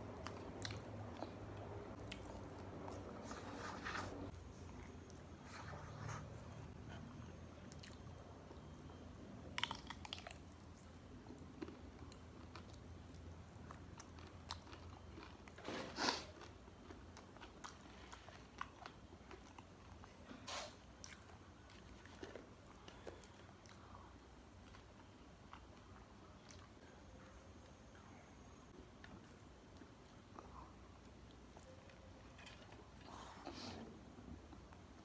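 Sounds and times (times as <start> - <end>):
chewing crispy food: 0.0 - 4.0, 6.9 - 28.0
faint low hum: 0.0 - 35.0.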